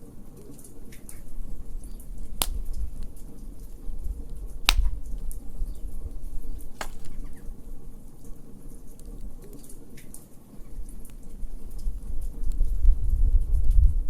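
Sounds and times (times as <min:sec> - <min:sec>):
wood fire crackling: 0:01.2 - 0:10.0
fire popping: 0:01.3 - 0:08.0.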